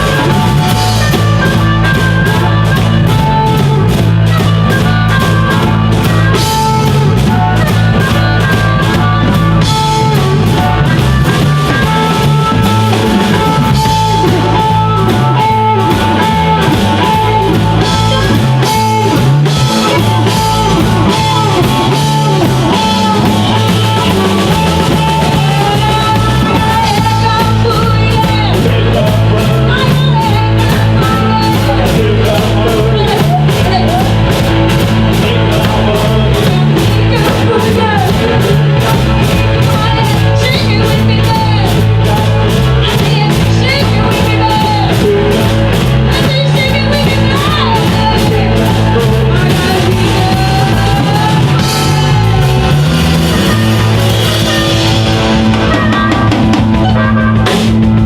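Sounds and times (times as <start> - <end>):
bass: 0.0 - 58.0
drum kit: 0.0 - 58.0
electric guitar: 0.0 - 58.0.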